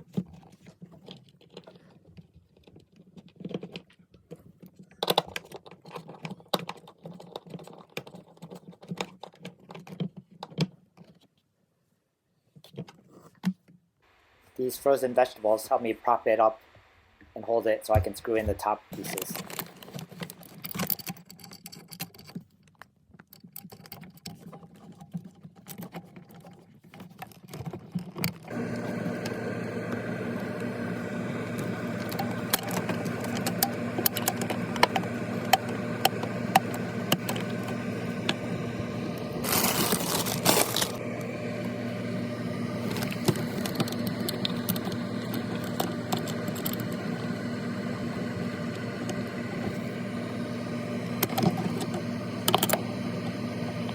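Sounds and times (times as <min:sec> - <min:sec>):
ice maker clicks and scrapes: 0:23.7 - 0:53.9
low electrical hum: 0:28.5 - 0:53.9.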